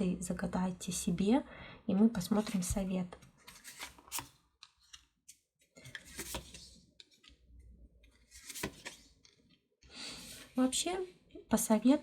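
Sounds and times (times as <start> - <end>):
cards rustling and sliding: 3.4 - 7.4, 8.1 - 9.4.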